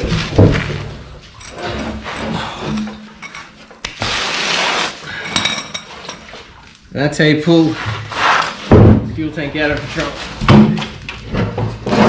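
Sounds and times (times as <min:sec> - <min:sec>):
metal clanking and scraping: 0:00.0 - 0:03.8.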